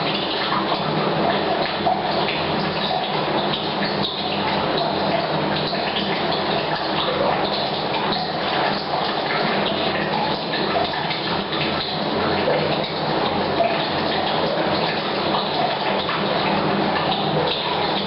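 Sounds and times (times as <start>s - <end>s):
water pipe pouring into a tank: 0.0s - 18.0s.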